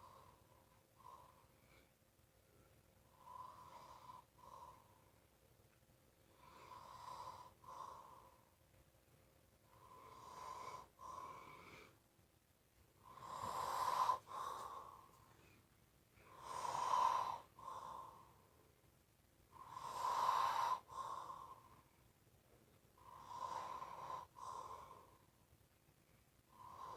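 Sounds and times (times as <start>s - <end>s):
person snoring loudly: 13.0s - 14.9s, 16.3s - 18.1s, 19.6s - 21.6s, 23.0s - 25.0s.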